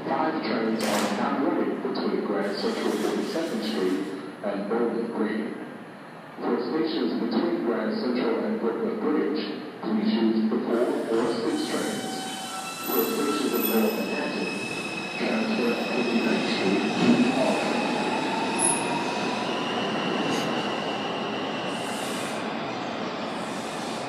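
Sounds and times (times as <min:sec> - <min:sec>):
train wheels squealing on rail: 0:10.8 - 0:24.0.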